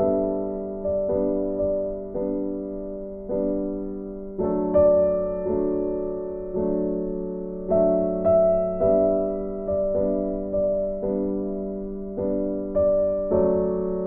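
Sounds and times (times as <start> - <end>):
soft electric piano chords: 0.0 - 14.0.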